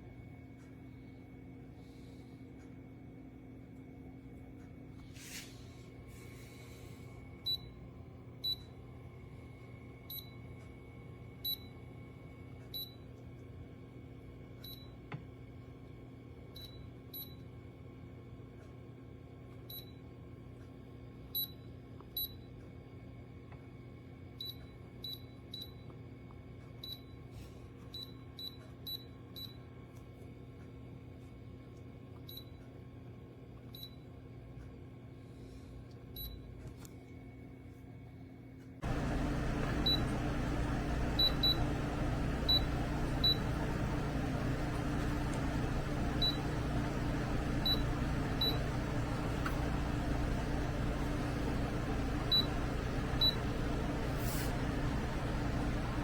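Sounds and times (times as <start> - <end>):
humidifier humming: 38.8 - 56.0.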